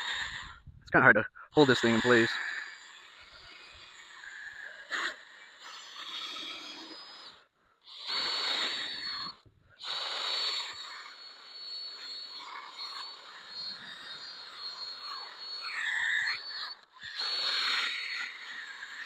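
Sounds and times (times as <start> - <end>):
electric polisher whining: 9.9 - 16.6.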